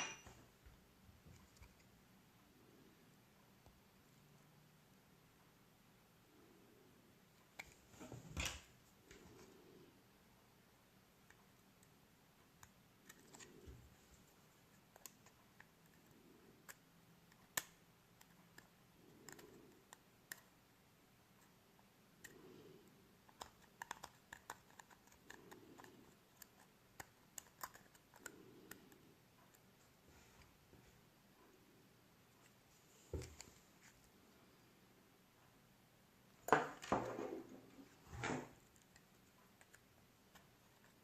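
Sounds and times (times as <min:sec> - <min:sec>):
small parts and tool clicking: 0:11.2 - 0:20.6, 0:22.2 - 0:29.7.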